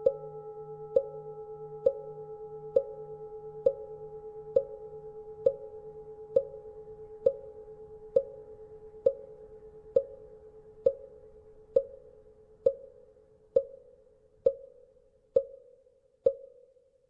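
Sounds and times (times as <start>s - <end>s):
temple bell hum: 0.0s - 11.7s.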